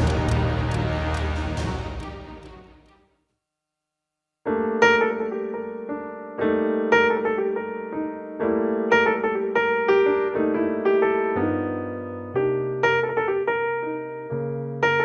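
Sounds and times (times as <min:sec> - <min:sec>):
background music: 0:00.0 - 0:03.2
solo piano chords: 0:04.5 - 0:15.0.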